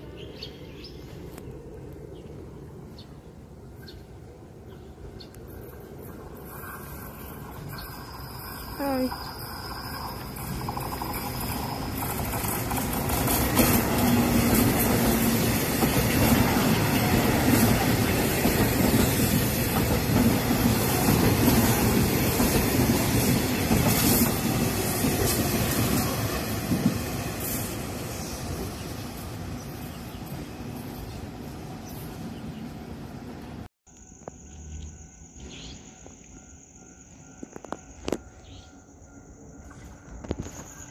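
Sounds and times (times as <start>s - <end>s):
train passing with rail noise: 0.0s - 40.9s
train wheel clicks: 9.2s - 26.1s.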